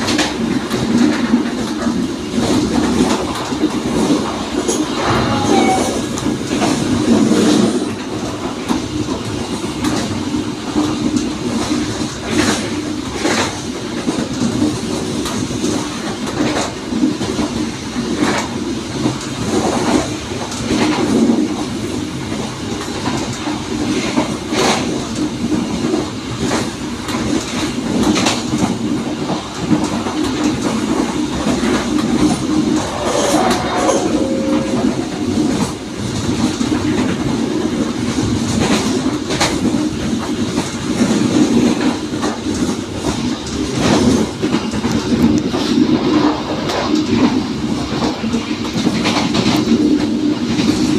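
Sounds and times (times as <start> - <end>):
train rumbling: 0.0 - 50.9
brief high-pitched tone: 4.9 - 6.1, 32.8 - 35.7.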